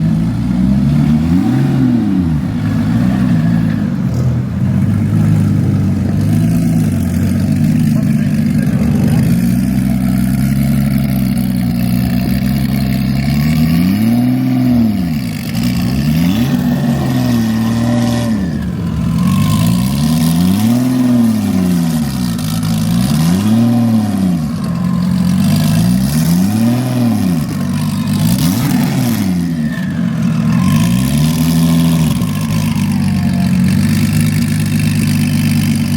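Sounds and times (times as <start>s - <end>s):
car engine idling: 0.0s - 35.9s
engine revving: 0.0s - 35.9s.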